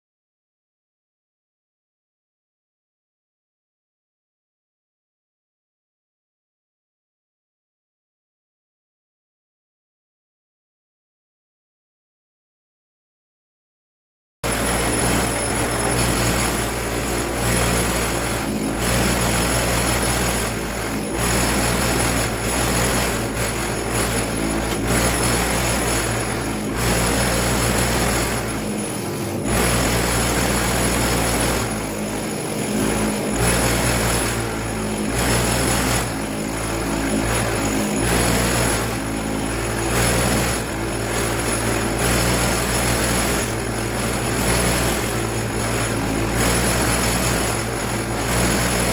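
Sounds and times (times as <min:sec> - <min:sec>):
wire wheel scrubbing metal: 0:14.4 - 0:48.9.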